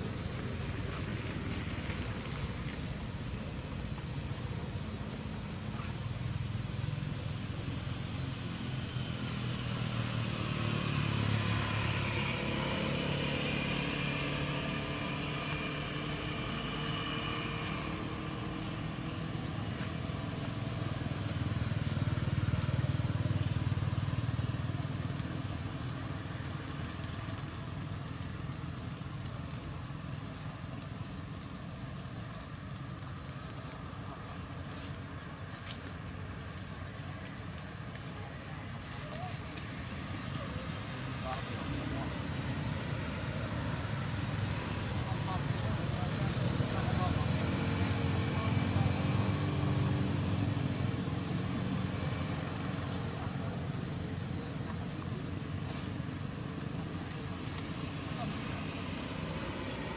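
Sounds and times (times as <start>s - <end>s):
vehicles passing: 0.0s - 59.9s.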